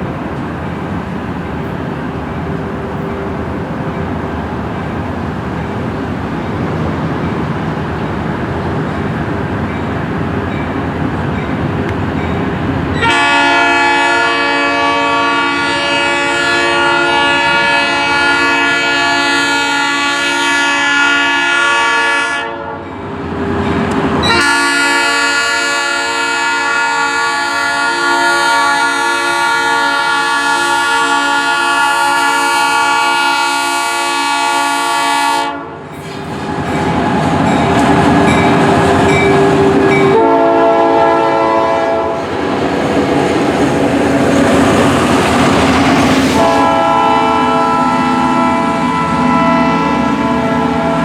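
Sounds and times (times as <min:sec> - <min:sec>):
passing train rumble and clatter: 0:00.0 - 0:51.0
locomotive air horn blasts: 0:13.0 - 0:22.8, 0:24.2 - 0:35.8, 0:40.0 - 0:42.3, 0:46.3 - 0:51.0.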